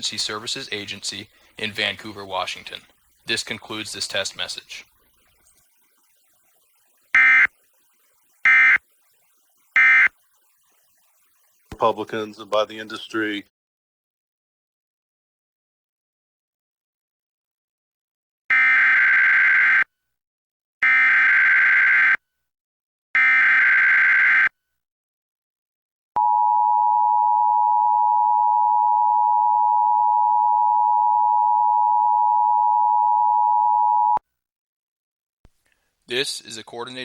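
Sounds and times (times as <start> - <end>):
digital header data screech: 1.8 - 11.7
two-tone attention signal: 7.1 - 7.6, 8.4 - 8.9, 9.8 - 10.3.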